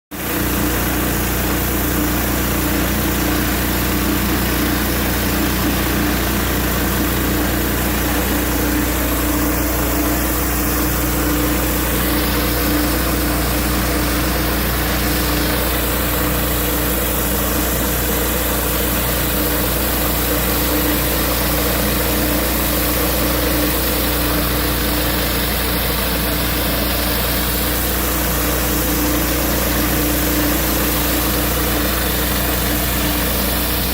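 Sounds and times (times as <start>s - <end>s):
petrol engine running: 0.2s - 33.9s
high pressure water hiss: 4.6s - 33.9s.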